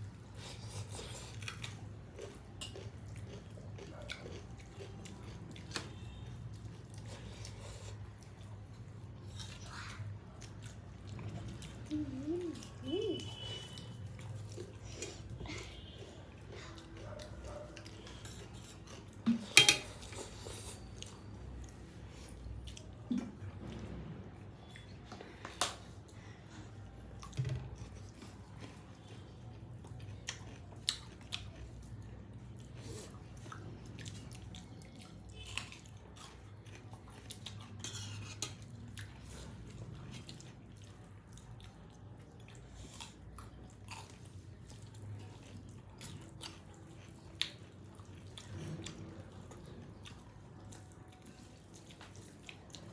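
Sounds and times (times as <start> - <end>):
chewing: 0.0 - 52.9
dishes and cutlery clattering: 18.2 - 20.2.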